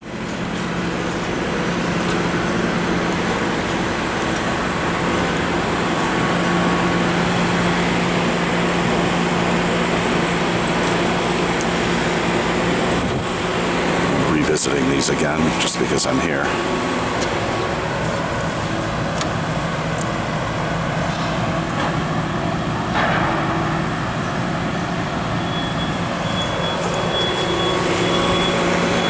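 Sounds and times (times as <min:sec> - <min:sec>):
traffic running by: 0:00.0 - 0:29.0
continuous low hum: 0:12.9 - 0:20.4.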